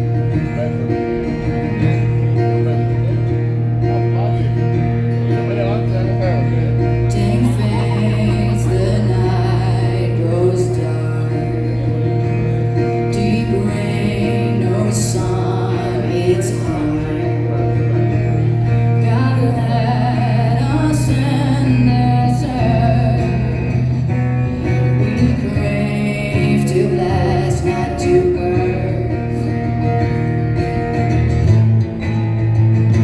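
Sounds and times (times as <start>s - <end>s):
acoustic guitar: 0.0s - 33.0s
person singing: 7.0s - 23.9s, 24.6s - 29.8s.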